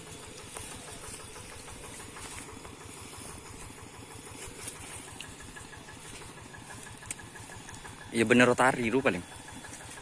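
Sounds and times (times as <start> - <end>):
diesel engine chugging: 0.0 - 10.0.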